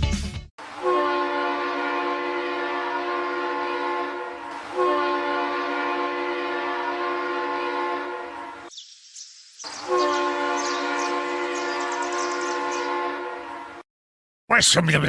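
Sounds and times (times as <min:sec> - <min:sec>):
horn blast chord: 0:00.7 - 0:08.7, 0:09.8 - 0:13.8.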